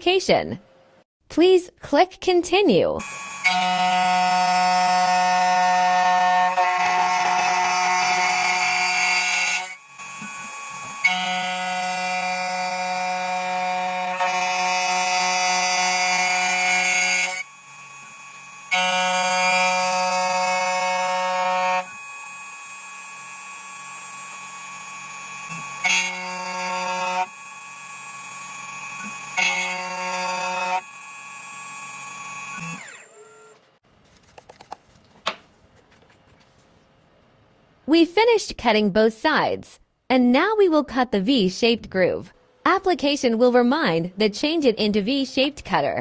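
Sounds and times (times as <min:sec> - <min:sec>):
key cutting machine whining: 0:03.0 - 0:33.6.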